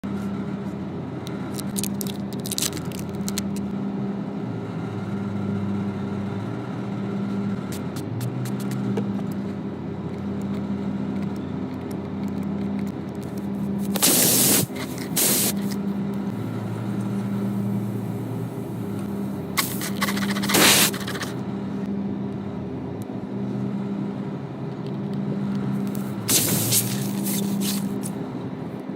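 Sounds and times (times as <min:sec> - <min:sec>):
mechanical hum: 0:00.0 - 0:28.9
loud hissing bursts: 0:13.9 - 0:15.8, 0:19.6 - 0:21.3, 0:26.3 - 0:28.1.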